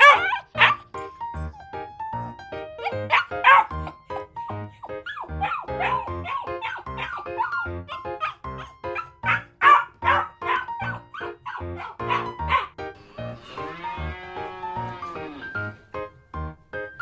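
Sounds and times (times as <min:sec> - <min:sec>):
dog barking: 0:00.0 - 0:01.5, 0:02.8 - 0:12.8.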